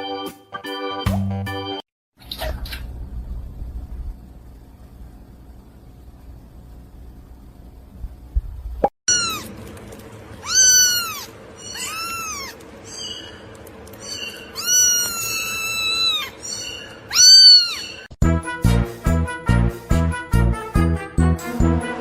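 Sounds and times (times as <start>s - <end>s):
cat meowing: 9.1s - 9.6s, 10.4s - 12.6s, 14.5s - 18.1s.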